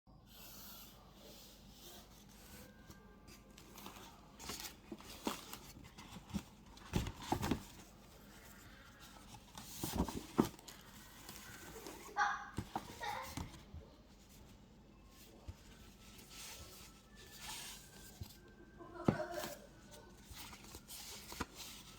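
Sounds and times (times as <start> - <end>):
wrapping rustling: 2.0 - 21.9.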